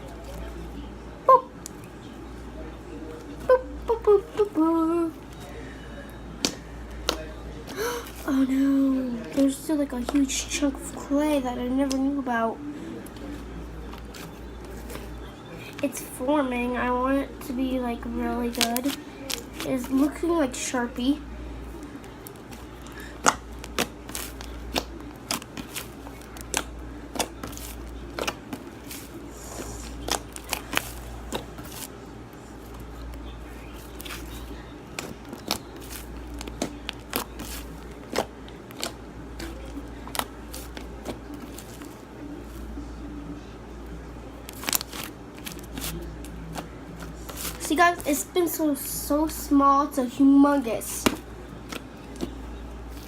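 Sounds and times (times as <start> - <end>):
steady low hum: 0.0 - 53.0
slime clicking and popping: 23.2 - 28.6.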